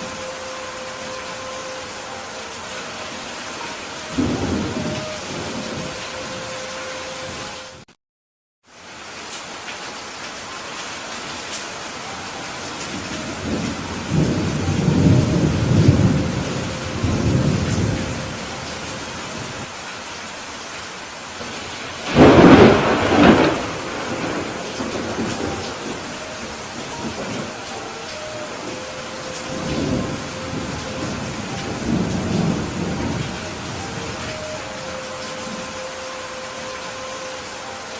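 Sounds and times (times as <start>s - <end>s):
heavy rain falling: 0.0s - 7.8s, 8.7s - 37.9s
rolling thunder rumble: 4.1s - 6.5s, 12.9s - 19.6s, 22.0s - 35.6s
loud thunderclap: 22.0s - 26.0s.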